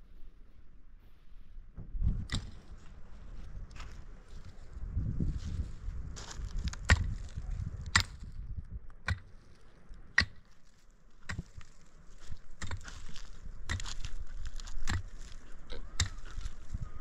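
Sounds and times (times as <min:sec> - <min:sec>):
hand tool striking: 0:10.2 - 0:10.6, 0:11.2 - 0:11.7, 0:12.6 - 0:16.4.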